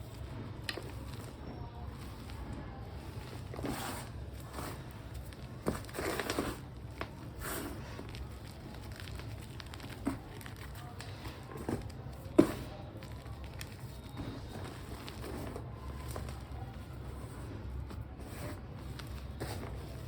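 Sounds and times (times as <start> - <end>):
chalk crunching and crumbling: 0.0 - 20.0.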